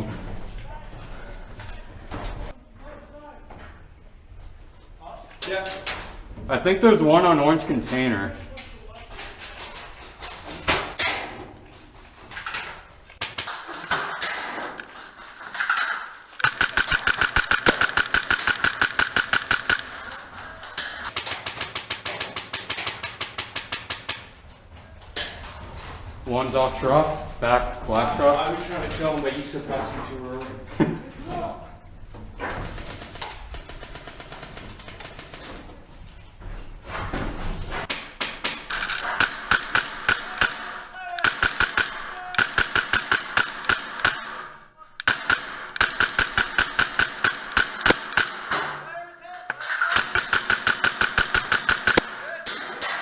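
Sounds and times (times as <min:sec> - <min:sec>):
scattered clicks: 0:13.1 - 0:24.3, 0:38.2 - 0:48.7, 0:49.4 - 0:53.0
airsoft gun firing full-auto: 0:16.4 - 0:20.4, 0:38.7 - 0:48.8, 0:49.8 - 0:52.3.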